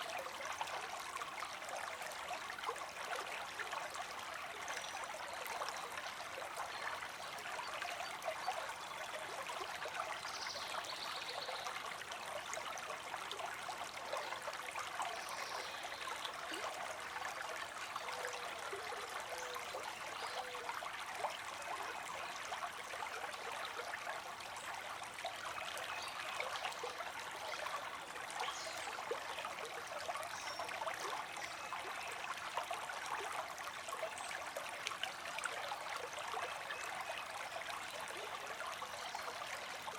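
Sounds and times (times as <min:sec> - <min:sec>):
creek water streaming: 0:00.0 - 0:39.9.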